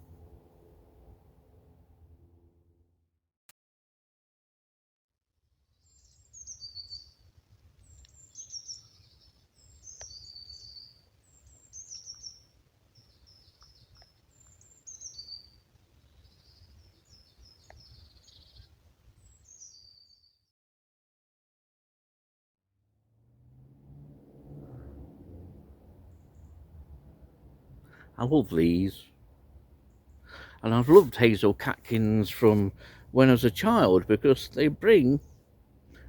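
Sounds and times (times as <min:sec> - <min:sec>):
low background rumble: 0:00.0 - 0:02.8, 0:24.0 - 0:36.0
songbird singing: 0:05.8 - 0:20.4, 0:24.5 - 0:36.0.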